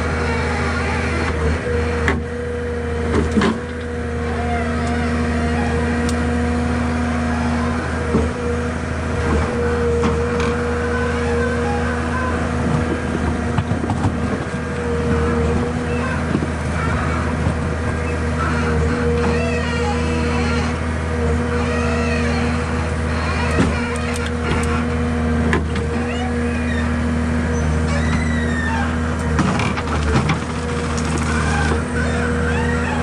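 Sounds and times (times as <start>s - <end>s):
diesel engine and hydraulics whine: 0.0s - 33.0s
sharp clicks and knocks: 29.2s - 31.8s.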